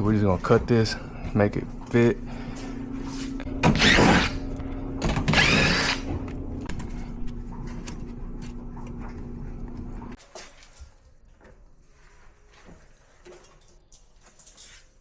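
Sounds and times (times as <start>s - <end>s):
power tool cutting: 3.6s - 6.2s
loud screeching cut: 3.7s - 4.4s, 5.3s - 6.1s.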